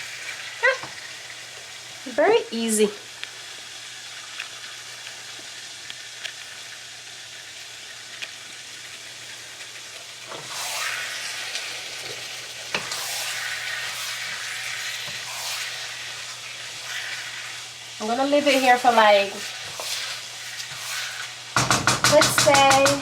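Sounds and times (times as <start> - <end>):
onions sizzling in oil: 0.0 - 23.0
sharp knock: 21.6 - 23.0.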